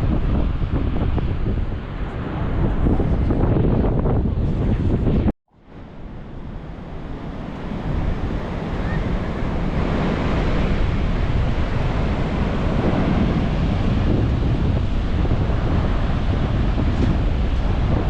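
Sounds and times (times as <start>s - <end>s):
surf breaking and washing: 0.0s - 18.0s
wind buffeting microphone: 0.0s - 18.0s.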